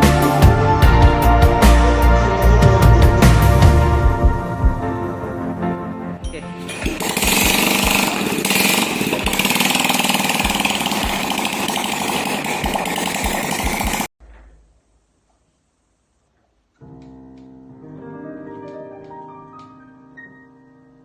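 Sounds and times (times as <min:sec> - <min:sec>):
motorcycle engine running: 0:06.7 - 0:14.1.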